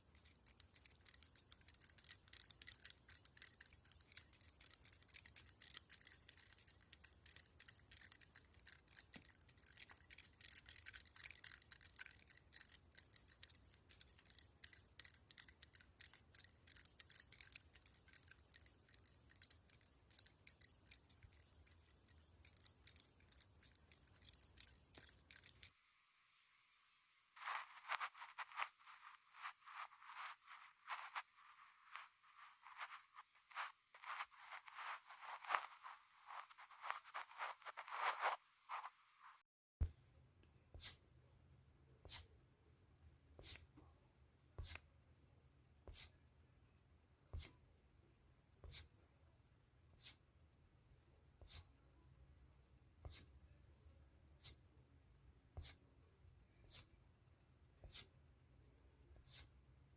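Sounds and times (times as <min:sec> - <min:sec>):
tapping and scratching makeup items: 0:00.0 - 0:25.7, 0:27.4 - 0:38.9
background hiss: 0:00.0 - 0:39.4.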